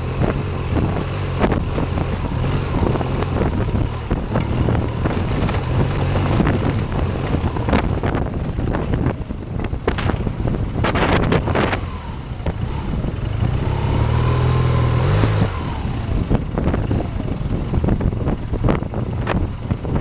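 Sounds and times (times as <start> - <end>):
motorcycle engine revving: 0.0 - 20.0
knocks over rough ground: 0.8 - 11.9.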